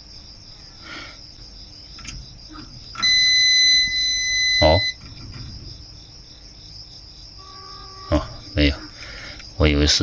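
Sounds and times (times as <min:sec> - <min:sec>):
multimeter continuity beep: 0:03.0 - 0:05.1.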